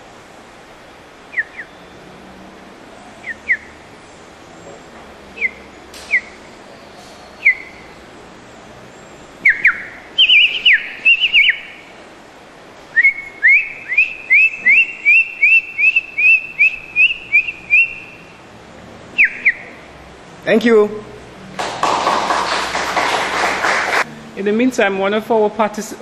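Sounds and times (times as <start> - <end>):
person whistling birdsong: 1.3 - 1.9, 3.2 - 3.8, 5.4 - 7.9, 9.4 - 11.9, 12.9 - 18.3, 19.2 - 19.7.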